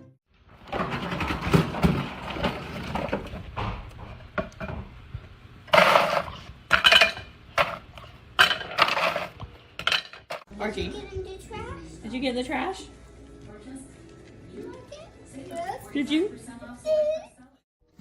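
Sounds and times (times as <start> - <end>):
household items clattering and rustling: 0.6 - 4.9, 5.7 - 10.9.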